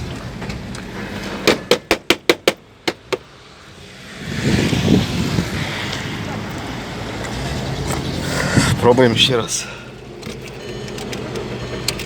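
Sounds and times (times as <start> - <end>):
sharp knocks on car battery: 1.4 - 3.2.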